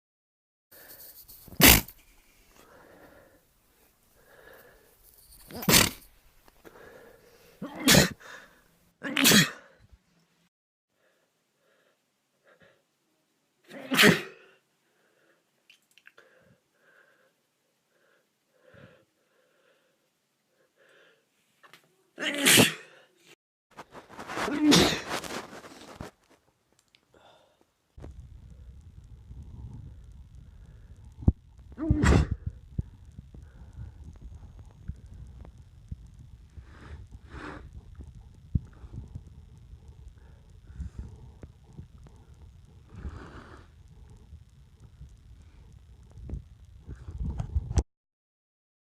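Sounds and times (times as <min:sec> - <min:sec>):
breathy sounds: 0:00.8 - 0:08.8, 0:27.0 - 0:47.7
man sneezing: 0:05.5 - 0:06.0, 0:07.6 - 0:08.2, 0:09.0 - 0:09.7, 0:13.7 - 0:14.5, 0:22.2 - 0:23.0, 0:24.5 - 0:25.1, 0:31.8 - 0:32.3.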